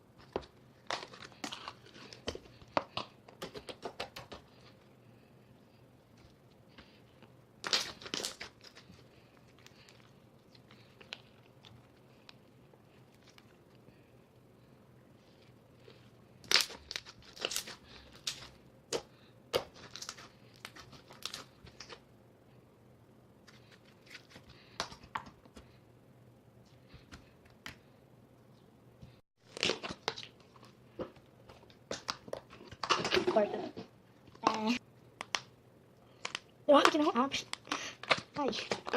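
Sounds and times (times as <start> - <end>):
slime crackling and popping: 7.6 - 12.0, 16.4 - 22.0, 29.4 - 30.6, 31.5 - 33.2.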